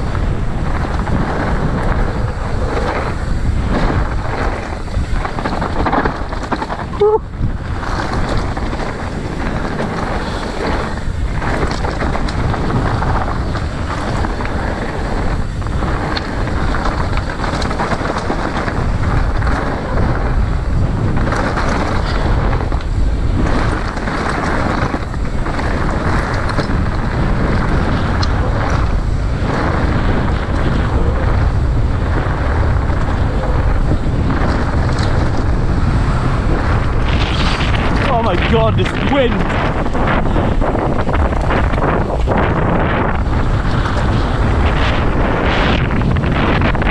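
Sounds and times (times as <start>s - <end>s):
strong wind on microphone: 0.0s - 46.9s.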